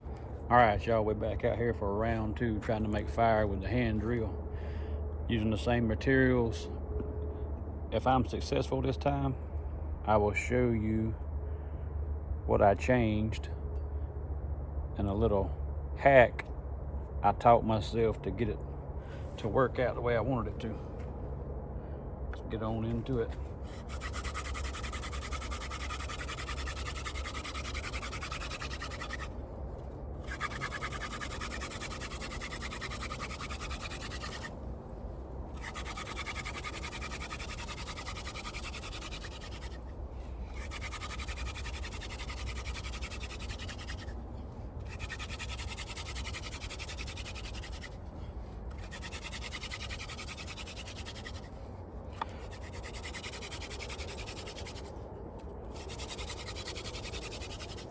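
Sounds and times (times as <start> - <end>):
wooden spindle rubbing on wood: 23.6 - 29.4, 30.2 - 34.6, 35.5 - 39.9, 40.5 - 44.2, 44.8 - 48.0, 48.7 - 51.6, 52.2 - 55.0, 55.7 - 57.9.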